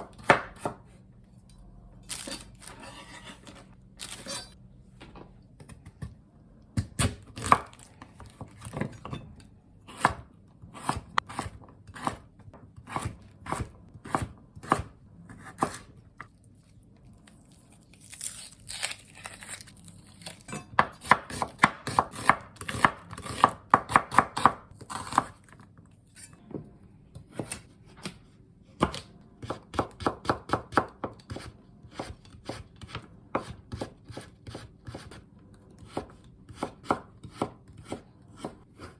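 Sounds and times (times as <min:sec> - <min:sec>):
knife chopping on cutting board: 0:00.0 - 0:00.8, 0:09.9 - 0:15.9, 0:20.5 - 0:25.4, 0:27.2 - 0:28.2, 0:28.8 - 0:35.2, 0:35.8 - 0:38.9.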